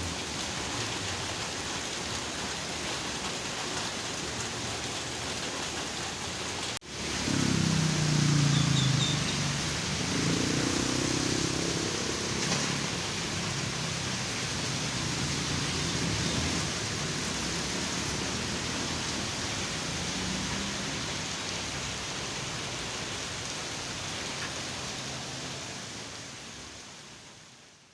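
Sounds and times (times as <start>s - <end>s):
rain hissing on a road: 0.0s - 27.9s
passing vehicle engine: 6.9s - 23.5s.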